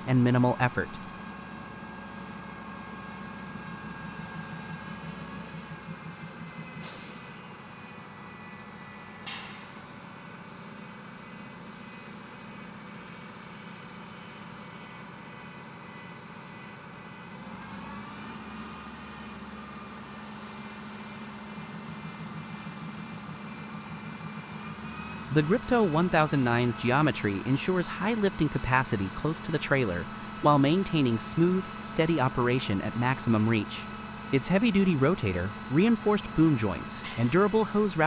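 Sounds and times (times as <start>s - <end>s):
hydraulics whining: 0.0s - 10.1s, 21.0s - 38.0s
tractor diesel engine running: 0.0s - 38.0s
sharp hiss: 37.0s - 38.0s.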